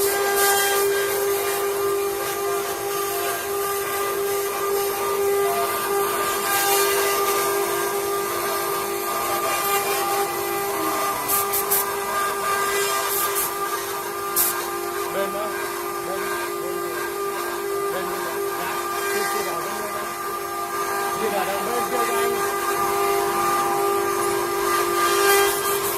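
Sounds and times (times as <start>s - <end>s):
hiss of cutting wood: 0.0s - 20.4s
router spindle whine: 0.0s - 25.9s.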